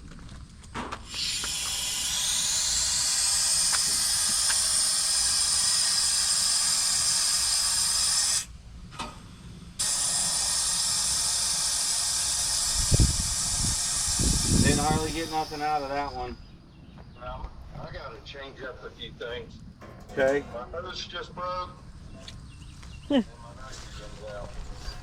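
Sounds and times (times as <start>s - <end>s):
gas hissing from hose: 0.9s - 8.5s, 9.4s - 16.2s.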